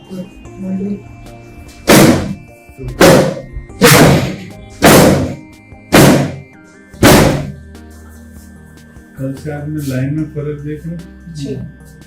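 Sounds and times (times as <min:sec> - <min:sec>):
faint background music: 0:00.0 - 0:12.0
heavy thumps: 0:01.8 - 0:02.4, 0:03.0 - 0:07.6.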